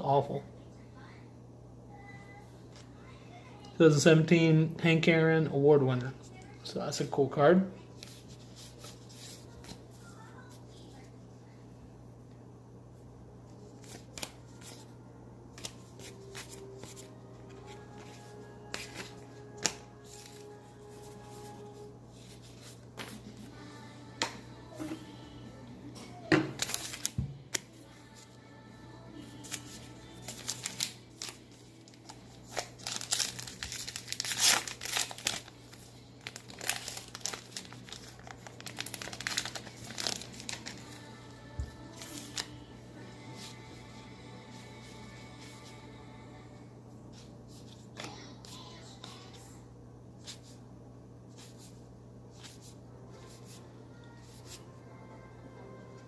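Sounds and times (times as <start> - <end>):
steady low hum: 0.0 - 56.0
plastic wrapper crinkling: 26.5 - 27.6, 29.4 - 41.1.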